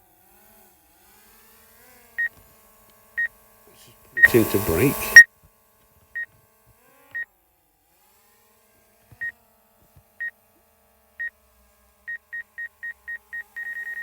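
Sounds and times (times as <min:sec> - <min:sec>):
short high beeps: 0:04.2 - 0:05.3, 0:12.1 - 0:14.0.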